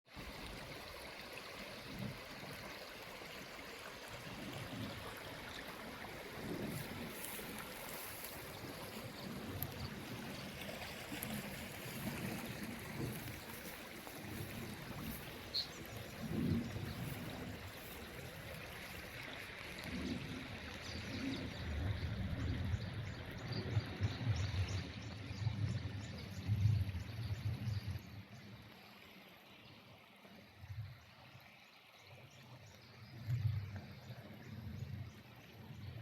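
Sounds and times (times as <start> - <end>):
wind gusting on microphone: 6.0 - 28.1.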